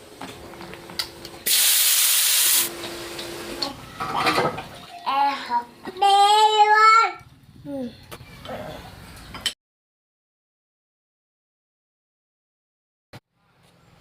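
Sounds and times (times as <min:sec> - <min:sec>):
loud hissing rush: 0:01.5 - 0:02.7.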